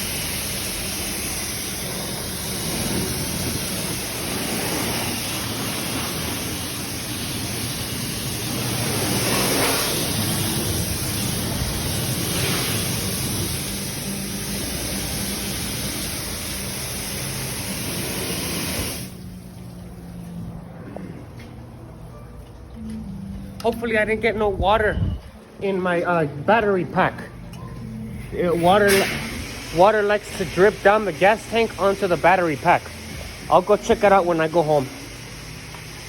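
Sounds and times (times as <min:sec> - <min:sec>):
pressure wand spray hiss: 0:00.0 - 0:19.3, 0:28.5 - 0:36.0.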